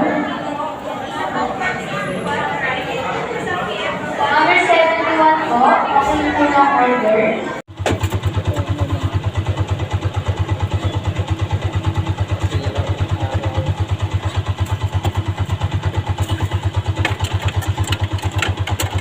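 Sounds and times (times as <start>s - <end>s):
small engine running: 7.7s - 19.0s.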